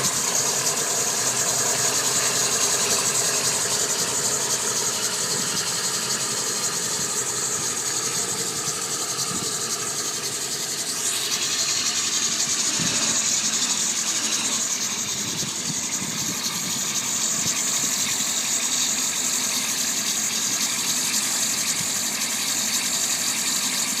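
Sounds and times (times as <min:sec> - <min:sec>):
diesel truck engine idling: 0:00.0 - 0:24.0.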